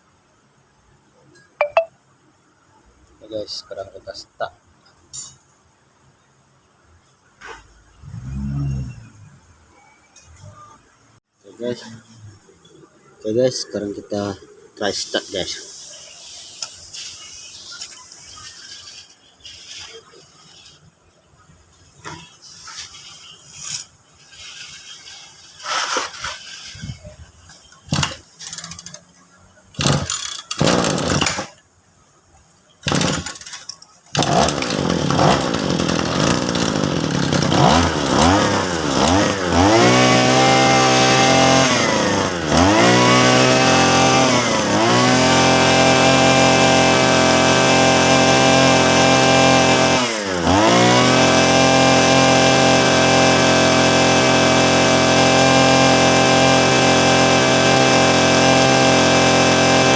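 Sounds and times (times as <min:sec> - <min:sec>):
two-stroke engine starting and revving: 0:08.0 - 0:09.3, 0:27.9 - 0:29.0, 0:29.7 - 0:31.5, 0:32.8 - 0:59.9.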